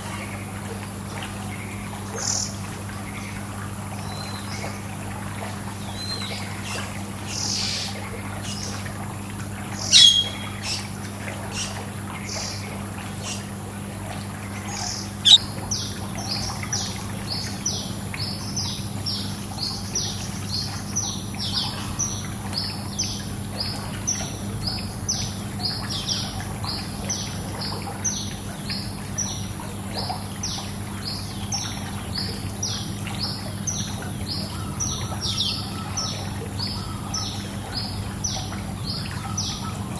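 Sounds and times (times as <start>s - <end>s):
pool water noise: 0.0s - 39.9s
bird repeating short chirp: 9.9s - 10.5s
birds chirping: 9.9s - 10.9s, 14.8s - 15.4s
sharp loud bird calls: 9.9s - 10.9s, 15.0s - 15.4s.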